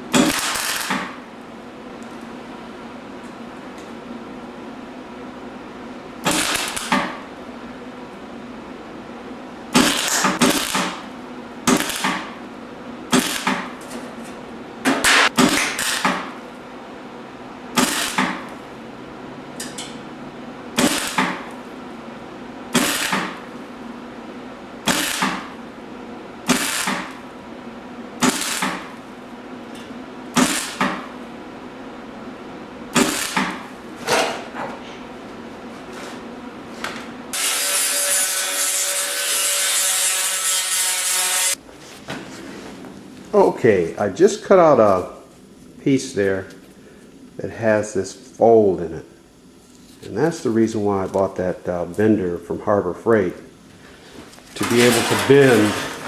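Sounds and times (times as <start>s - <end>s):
steady hum: 0.0s - 37.4s, 41.5s - 56.0s
welder crackling bursts: 0.1s - 1.2s, 6.2s - 7.2s, 9.7s - 12.4s, 13.1s - 13.9s, 14.8s - 16.4s, 17.7s - 18.6s, 20.8s - 21.6s, 22.7s - 23.6s, 24.8s - 25.6s, 26.4s - 27.3s, 28.2s - 29.0s, 30.3s - 31.2s, 32.9s - 33.8s, 54.5s - 56.0s
continuous noise: 41.5s - 56.0s.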